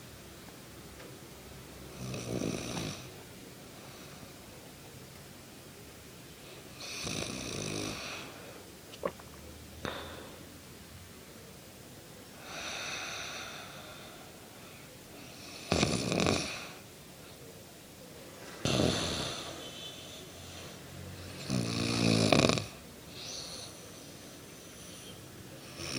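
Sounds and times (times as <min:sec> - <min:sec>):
woman snoring: 0:01.9 - 0:03.1, 0:06.8 - 0:08.4, 0:12.4 - 0:14.1, 0:15.3 - 0:16.8, 0:18.6 - 0:19.5, 0:21.2 - 0:23.8, 0:24.6 - 0:25.9.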